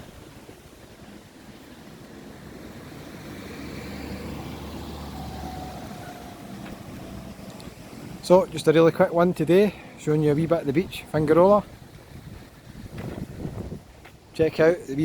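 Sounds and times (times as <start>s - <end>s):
vehicle engine passing by: 2.2s - 8.5s.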